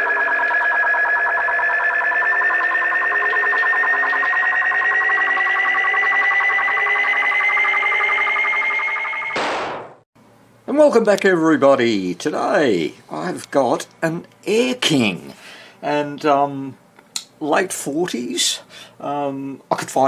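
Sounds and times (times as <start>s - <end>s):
warbling electronic tone: 0.0s - 10.0s.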